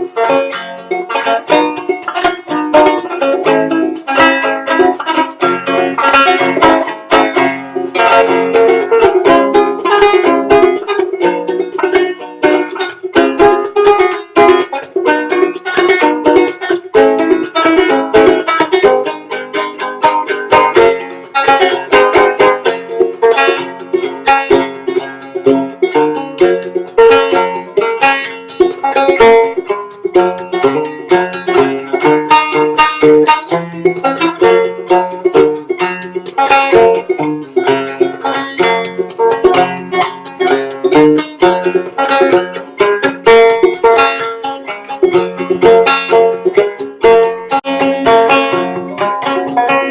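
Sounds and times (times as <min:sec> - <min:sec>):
banjo plucked and strummed: 0:00.0 - 0:49.9.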